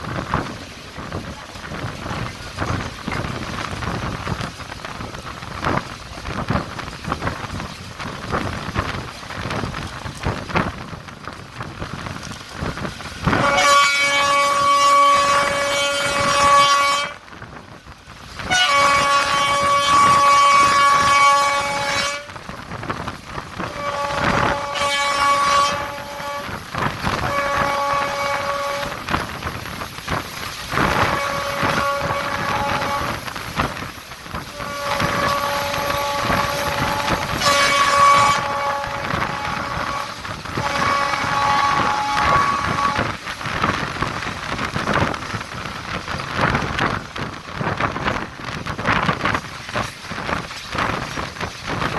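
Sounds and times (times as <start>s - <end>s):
moving train running noise: 0.0s - 51.9s
electric train horn: 13.2s - 17.4s, 18.4s - 47.3s.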